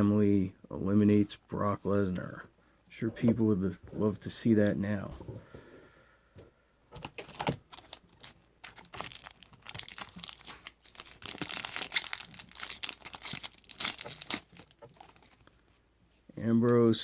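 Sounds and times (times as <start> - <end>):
wrapper tearing and crinkling: 7.1 - 15.4.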